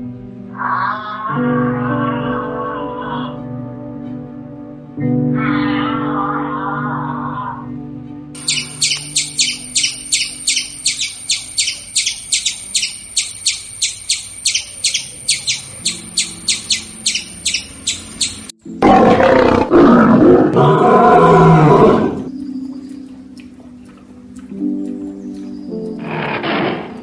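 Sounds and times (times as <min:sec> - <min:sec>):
soft background music: 0:00.0 - 0:27.0
big cat roaring: 0:00.6 - 0:03.4, 0:05.3 - 0:07.8, 0:18.7 - 0:22.3, 0:26.0 - 0:27.0
bird chirping: 0:08.4 - 0:18.6, 0:21.6 - 0:27.0.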